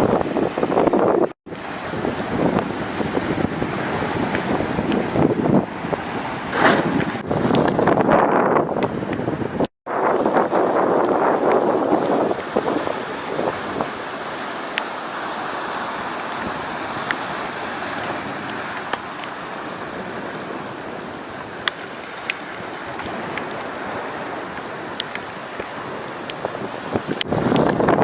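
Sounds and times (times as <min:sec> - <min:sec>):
rough sea waves: 0:00.0 - 0:28.0
strong wind: 0:00.0 - 0:28.0.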